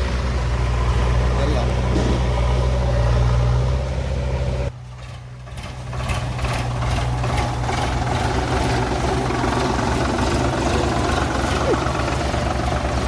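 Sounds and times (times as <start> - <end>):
engine idling: 0.0 - 13.0.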